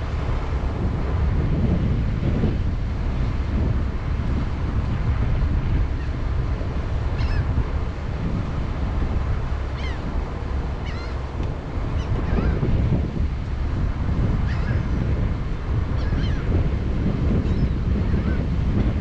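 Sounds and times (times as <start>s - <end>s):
wind buffeting microphone: 0.0s - 19.0s
faint bird calls: 7.2s - 7.5s, 9.7s - 10.1s, 10.8s - 11.2s, 14.4s - 14.9s, 16.0s - 16.5s.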